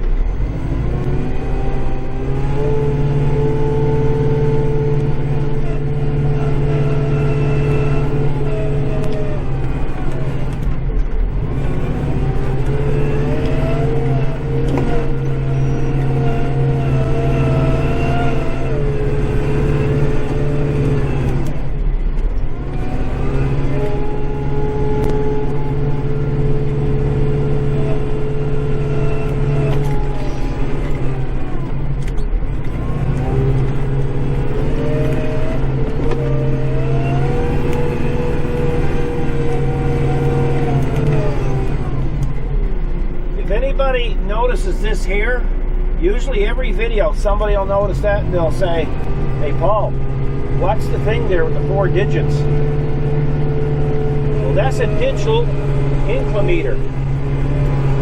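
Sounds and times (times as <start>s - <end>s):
tractor engine running under load: 0.0s - 58.0s
high whine: 42.4s - 58.0s.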